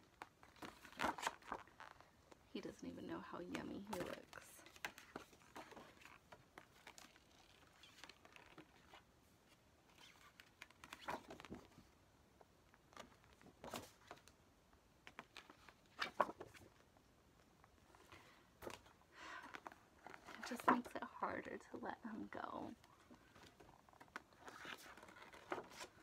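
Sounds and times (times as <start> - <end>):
paper rustles and taps: 15.0 - 16.9, 23.1 - 26.0.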